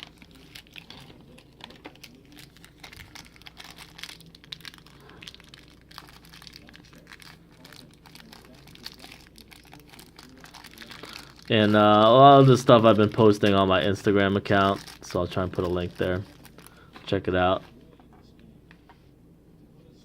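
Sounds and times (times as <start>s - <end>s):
plastic packaging crinkling: 0.0s - 17.6s.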